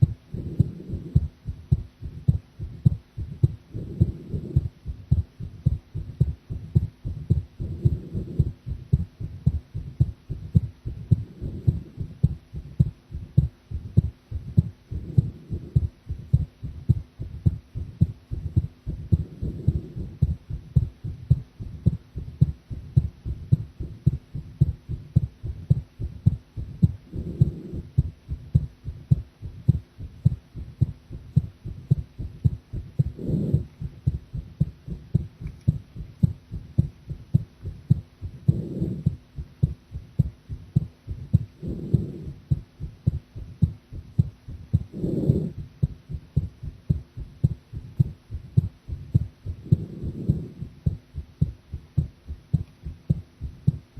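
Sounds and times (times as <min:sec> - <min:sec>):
heartbeat: 0:00.0 - 0:53.9.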